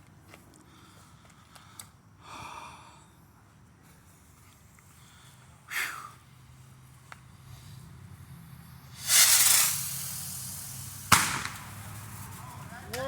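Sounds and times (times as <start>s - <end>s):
firework rocket launching hiss: 5.7s - 13.0s.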